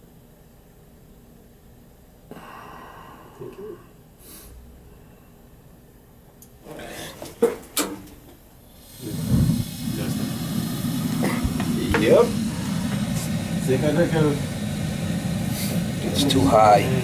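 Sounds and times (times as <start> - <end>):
gas burner igniting and burning: 6.4 - 17.0.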